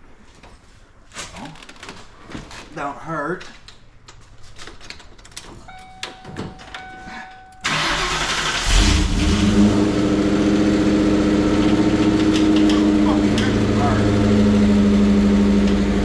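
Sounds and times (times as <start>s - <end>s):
car starter cranking: 7.6s - 10.6s, 11.2s - 14.8s
car engine idling loudly: 8.8s - 16.0s.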